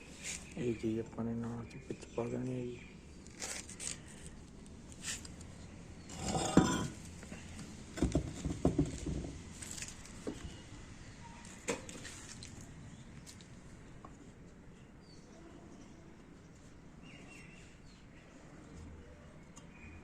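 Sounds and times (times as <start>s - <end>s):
light knocks and rattles: 7.9s - 10.6s.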